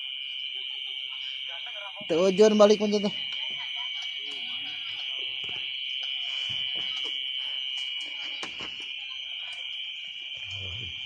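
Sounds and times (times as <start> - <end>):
insect chorus buzzing: 0.0 - 11.0.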